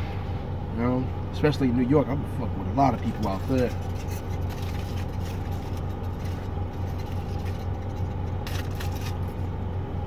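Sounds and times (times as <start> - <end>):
engine idling: 0.0 - 10.0
faint rustles: 3.0 - 9.6.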